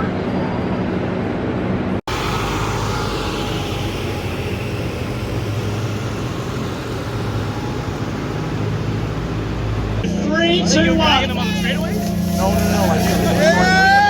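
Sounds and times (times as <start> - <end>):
race car engine passing: 2.1 - 14.0
roar of track noise: 2.1 - 14.0.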